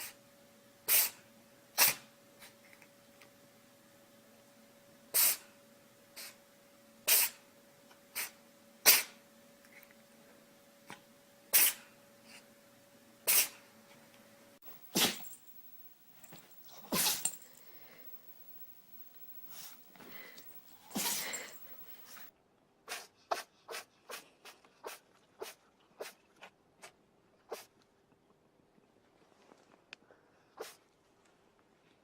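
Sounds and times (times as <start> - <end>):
pet sneezing: 0.9 - 1.2, 1.8 - 2.5, 5.2 - 5.5, 7.1 - 7.4, 8.2 - 9.2, 11.5 - 11.9, 13.3 - 13.6, 14.6 - 15.6, 16.2 - 18.6, 19.2 - 22.3, 22.9 - 26.2, 30.6 - 30.8.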